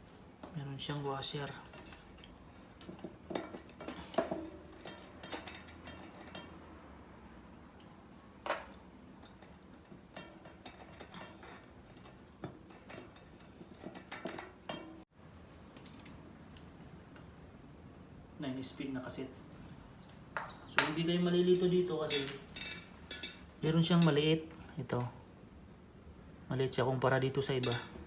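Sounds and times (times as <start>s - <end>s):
metal bicycle sprockets clinking: 0.9s - 6.8s, 21.9s - 24.2s, 27.4s - 28.0s.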